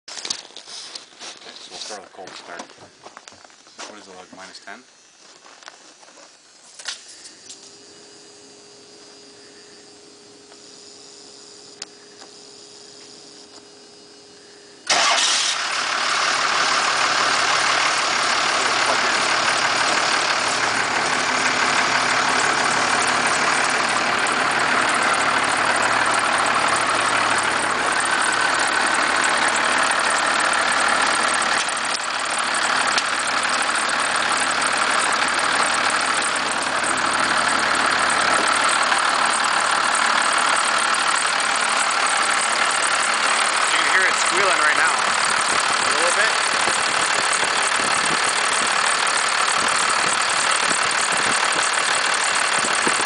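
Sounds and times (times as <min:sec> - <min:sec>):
diesel engine starting and idling: 0:07.1 - 0:53.0
engine knock and rattle: 0:14.8 - 0:53.0.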